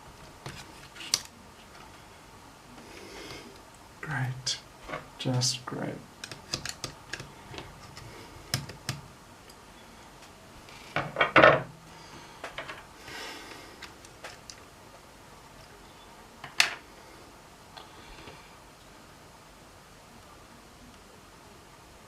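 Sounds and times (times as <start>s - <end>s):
plastic parts and tools clicking: 6.2s - 9.0s.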